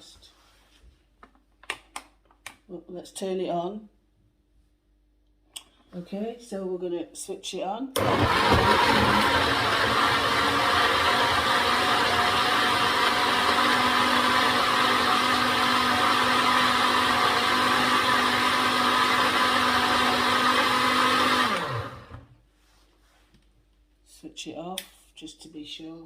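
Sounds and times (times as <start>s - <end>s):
blender running: 8.0s - 22.3s.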